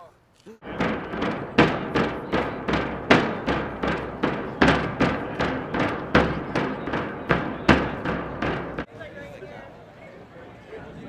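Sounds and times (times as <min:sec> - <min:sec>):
drums beating steady cadence: 0:00.6 - 0:09.0.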